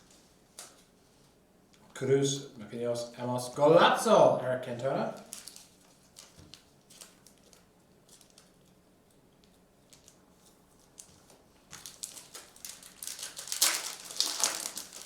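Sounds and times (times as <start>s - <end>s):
cards rustling and shuffling: 5.2s - 8.8s.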